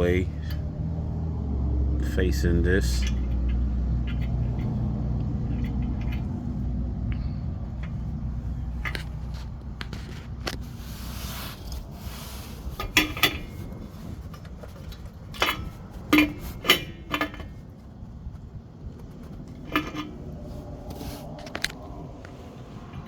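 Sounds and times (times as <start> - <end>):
wrench clinking on metal fitting: 2.7 - 8.0.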